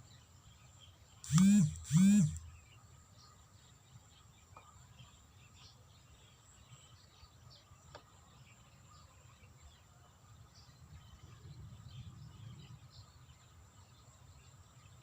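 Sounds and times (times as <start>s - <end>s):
faint high chirps: 1.3s - 2.6s.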